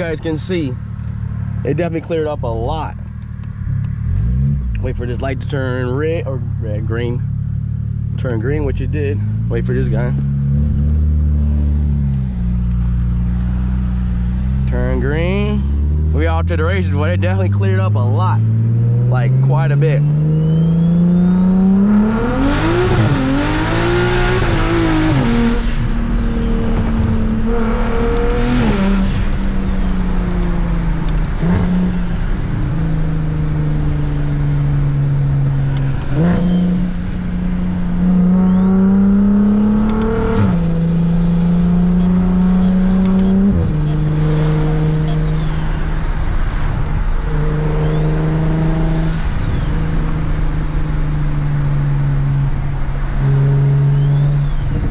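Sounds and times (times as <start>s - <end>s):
car engine accelerating through gears: 0.0s - 54.9s
turbo whistle: 53.3s - 54.8s.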